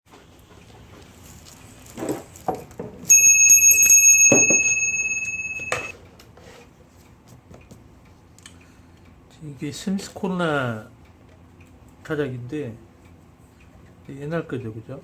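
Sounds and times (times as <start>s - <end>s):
typewriter bell ringing: 3.1s - 5.9s.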